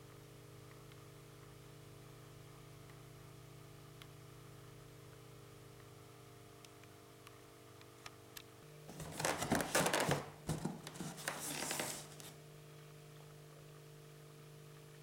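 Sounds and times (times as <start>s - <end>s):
packaging rustling and crinkling: 8.9s - 12.4s.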